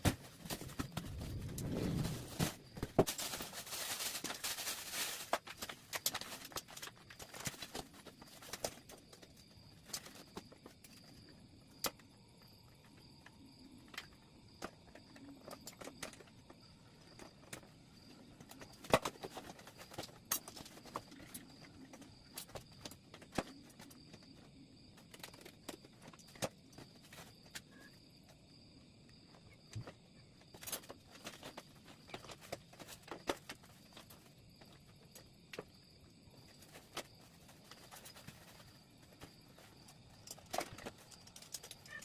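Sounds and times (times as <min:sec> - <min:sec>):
rustling: 0:00.0 - 0:09.2, 0:36.3 - 0:42.0.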